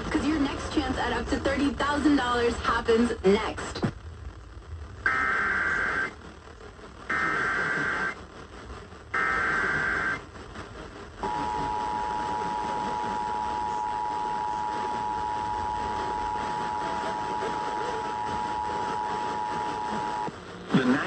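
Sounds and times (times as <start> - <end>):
buzzy data tone bursts: 4.0 - 21.0
steady two-tone attention signal: 11.2 - 20.3.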